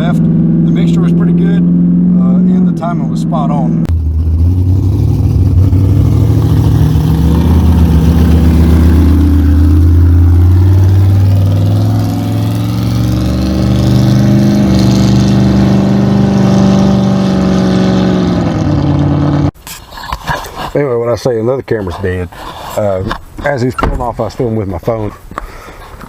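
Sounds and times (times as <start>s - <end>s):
race car engine revving hard: 0.0s - 19.5s.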